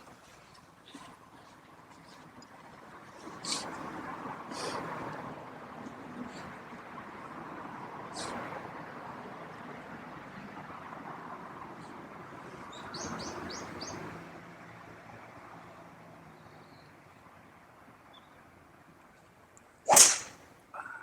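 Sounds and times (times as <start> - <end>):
small bird chirping: 12.7 - 14.0.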